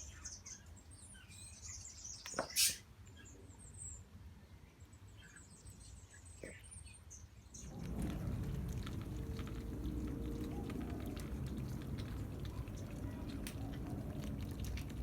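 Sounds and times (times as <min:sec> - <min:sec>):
flying-fox squeaking and chirping: 0:02.4 - 0:02.8.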